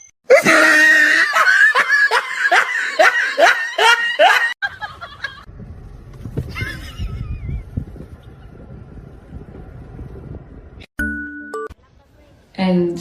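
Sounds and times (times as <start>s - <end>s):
person laughing in bursts: 0.3s - 5.5s, 6.5s - 7.6s.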